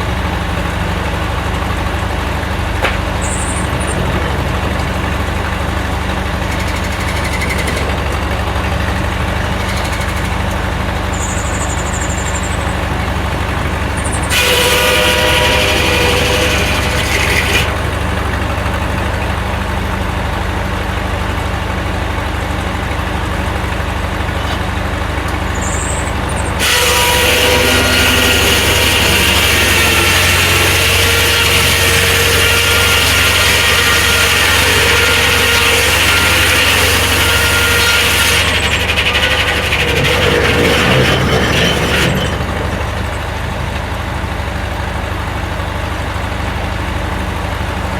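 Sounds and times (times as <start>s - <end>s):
sawmill engine running: 0.0s - 47.9s.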